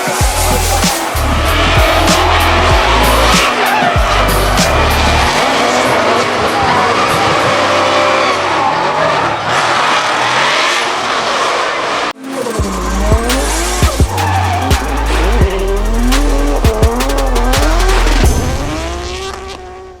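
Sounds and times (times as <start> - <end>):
background music: 0.0 - 6.2, 12.2 - 19.3
tyres squealing: 0.0 - 10.4, 12.3 - 18.3
car engine revving: 0.0 - 20.0.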